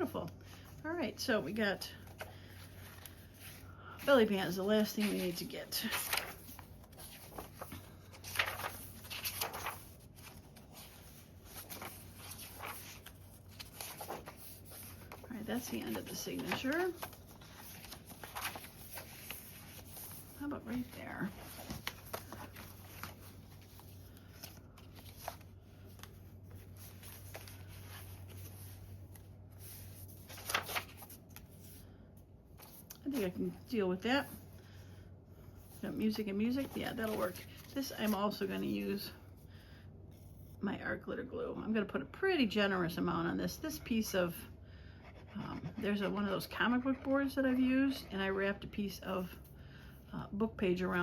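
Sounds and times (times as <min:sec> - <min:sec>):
paper rustling and scraping: 0:01.8 - 0:31.8, 0:35.6 - 0:39.1.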